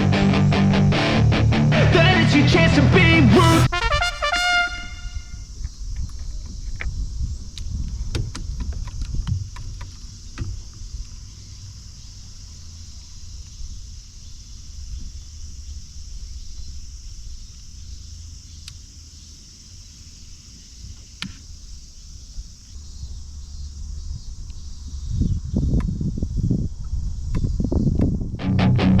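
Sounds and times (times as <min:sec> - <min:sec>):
wind rumble on microphone: 0:04.8 - 0:18.7, 0:20.3 - 0:29.0
small clicks and knocks: 0:07.6 - 0:10.8
steady high hiss: 0:11.2 - 0:24.8.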